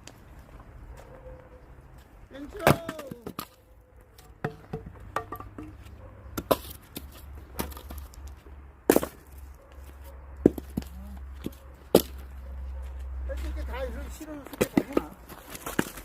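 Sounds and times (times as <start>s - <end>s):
axe chopping firewood: 2.5s - 3.6s, 6.4s - 8.0s, 8.8s - 9.4s, 10.4s - 12.3s, 14.3s - 16.0s.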